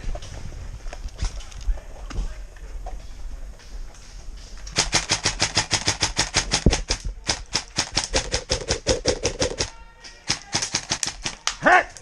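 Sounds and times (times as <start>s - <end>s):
airsoft gun firing bursts: 4.7s - 9.7s, 10.3s - 11.5s.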